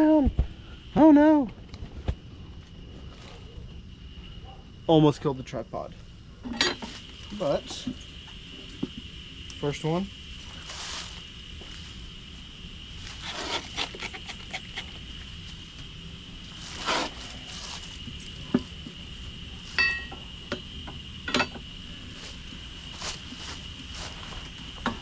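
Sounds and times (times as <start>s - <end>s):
crickets buzzing: 0.0s - 25.0s
metal clink: 19.8s - 20.2s.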